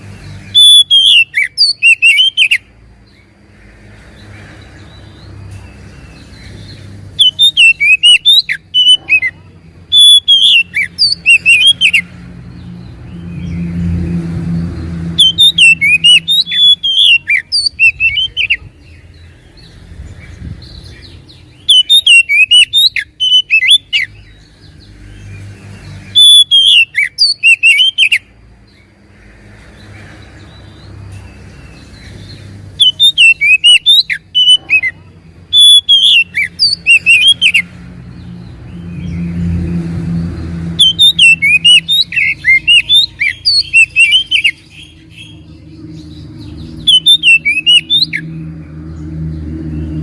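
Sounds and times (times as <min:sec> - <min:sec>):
bird singing whistled phrases: 0:00.5 - 0:02.7, 0:07.2 - 0:09.3, 0:09.9 - 0:12.0, 0:15.2 - 0:18.6, 0:21.6 - 0:24.2, 0:26.2 - 0:28.3, 0:32.8 - 0:34.9, 0:35.5 - 0:37.6, 0:40.8 - 0:45.4, 0:46.8 - 0:48.3.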